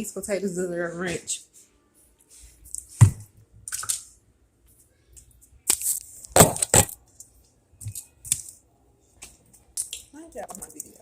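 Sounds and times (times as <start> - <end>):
eating clicks and smacks: 9.5 - 11.0.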